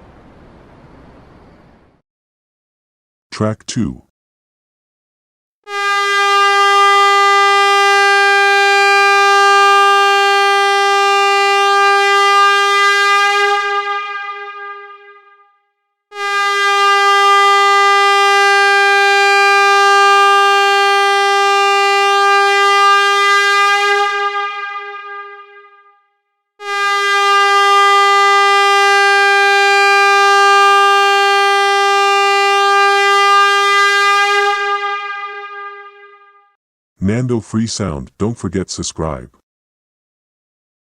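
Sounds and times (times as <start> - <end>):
air horn blasts: 5.7 - 36.6.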